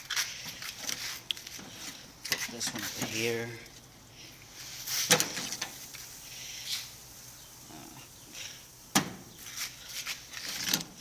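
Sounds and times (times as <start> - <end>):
ribs handled on grill: 0.0 - 11.0.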